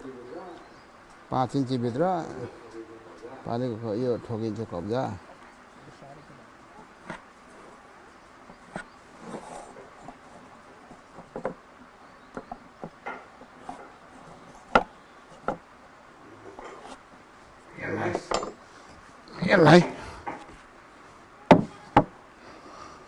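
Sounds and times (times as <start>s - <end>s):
wooden parts and tools knocking: 8.5s - 11.6s, 12.3s - 15.6s, 18.1s - 18.6s, 21.5s - 22.2s.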